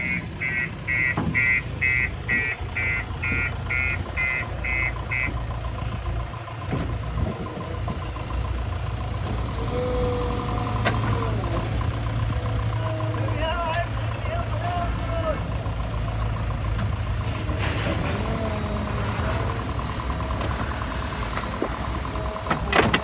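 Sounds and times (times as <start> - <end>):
reversing alarm beeping: 0.0 - 5.7
heavy engine running: 0.0 - 23.0.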